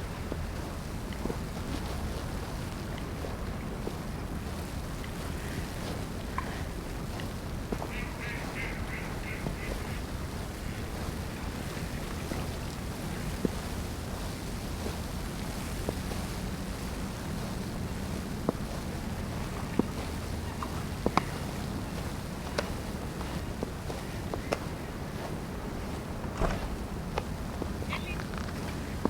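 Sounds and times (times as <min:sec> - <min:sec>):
low city rumble: 0:00.0 - 0:29.0
steady wind: 0:00.0 - 0:29.0
bird calls: 0:07.8 - 0:11.5, 0:27.7 - 0:29.0.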